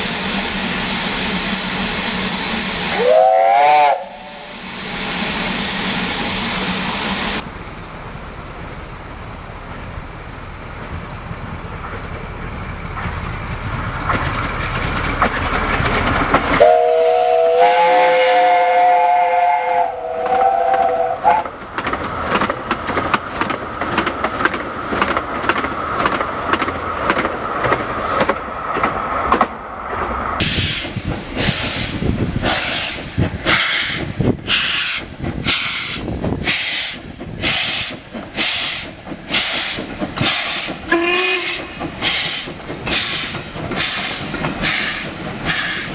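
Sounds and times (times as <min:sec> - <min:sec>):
steam hiss: 0:00.0 - 0:15.2, 0:30.4 - 0:45.9
locomotive exhaust beats: 0:00.0 - 0:28.4, 0:29.3 - 0:45.9
steam locomotive whistle: 0:01.9 - 0:07.4, 0:16.6 - 0:21.5, 0:31.4 - 0:45.9.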